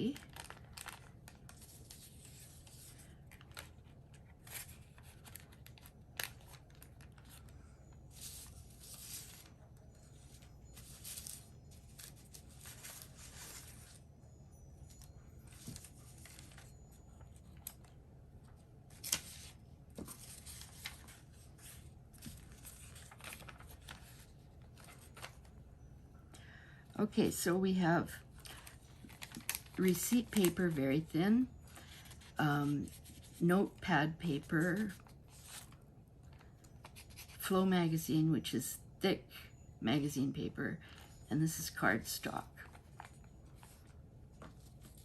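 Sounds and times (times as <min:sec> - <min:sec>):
paper rustling: 0:00.0 - 0:07.5, 0:10.1 - 0:14.0, 0:15.5 - 0:16.7, 0:18.9 - 0:25.5, 0:28.4 - 0:31.1, 0:31.7 - 0:33.4.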